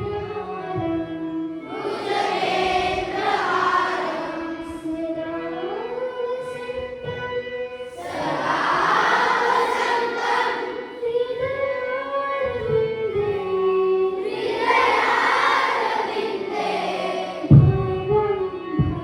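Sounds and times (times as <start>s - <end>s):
group singing in unison: 1.7s - 4.8s, 7.9s - 11.4s, 14.2s - 17.7s.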